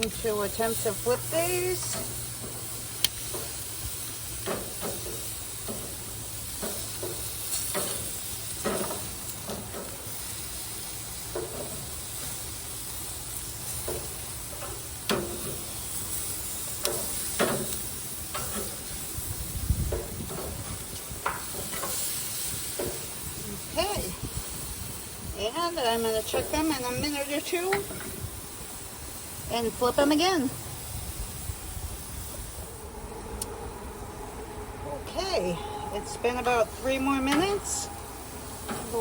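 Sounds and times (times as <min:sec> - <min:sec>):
skewers and tongs clicking on grate: 0:00.0 - 0:23.3
kabobs sizzling on a grill: 0:00.0 - 0:39.0.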